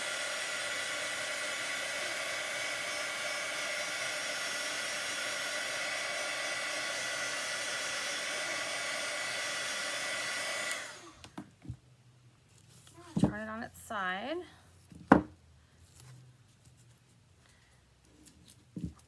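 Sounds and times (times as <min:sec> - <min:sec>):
hot-air dryer blowing with whine: 0:00.0 - 0:11.4.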